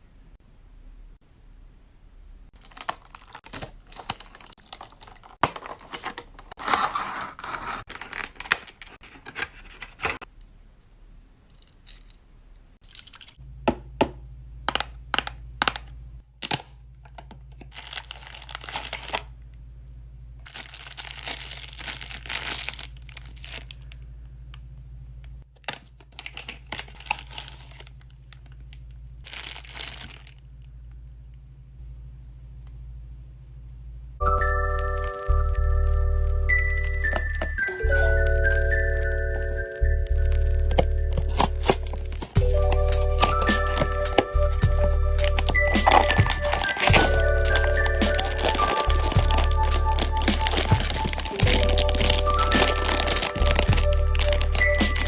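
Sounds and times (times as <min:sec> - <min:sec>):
packaging tearing and crinkling: 0:02.6 - 0:10.3, 0:17.6 - 0:19.3, 0:20.4 - 0:23.9, 0:25.6 - 0:30.4, 0:40.2 - 0:55.0.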